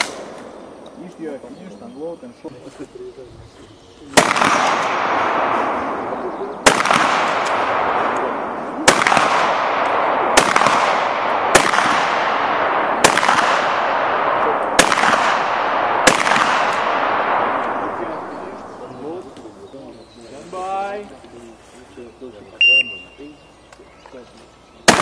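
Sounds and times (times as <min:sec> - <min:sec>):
shotgun shots echoing: 0:00.0 - 0:00.8, 0:04.1 - 0:19.6.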